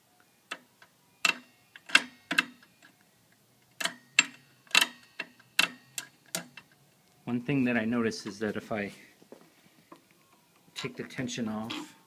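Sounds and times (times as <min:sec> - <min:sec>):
sharp metallic clicks with ring: 0:03.8 - 0:06.7.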